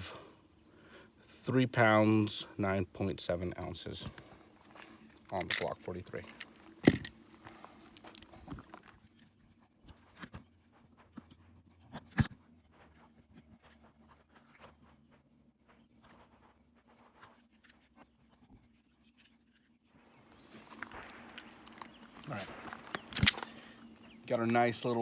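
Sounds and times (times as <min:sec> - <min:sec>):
pistol clicks and handling noises: 0:04.2 - 0:08.8, 0:20.3 - 0:24.2.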